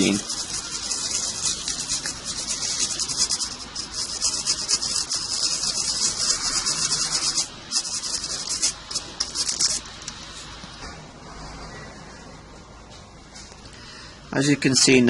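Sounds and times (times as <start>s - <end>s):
brush scrubbing circuit board: 0.0s - 10.6s.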